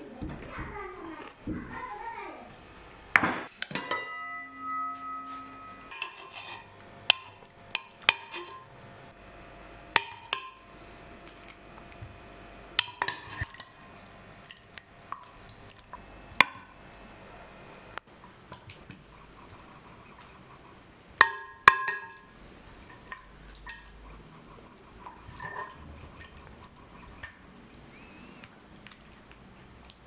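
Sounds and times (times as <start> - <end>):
dishes clinking: 3.2 - 8.8, 10.0 - 10.6, 21.2 - 22.3
struck dish ringing: 3.7 - 8.7.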